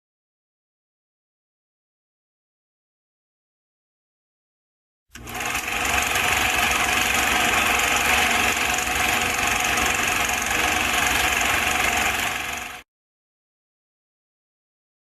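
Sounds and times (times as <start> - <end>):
small machine clattering: 5.2 - 12.8.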